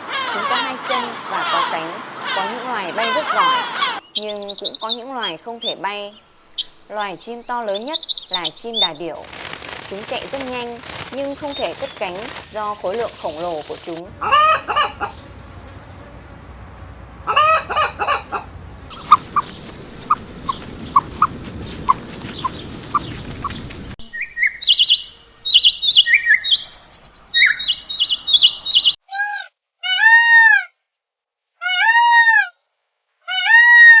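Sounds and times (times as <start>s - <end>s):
background hiss: 0.0s - 19.2s, 24.0s - 29.0s
loud arching bird calls: 0.0s - 21.3s, 24.0s - 29.0s
songbird chirping: 0.0s - 29.0s
chicken clucking: 9.9s - 19.5s
short bird peeps: 24.0s - 29.0s.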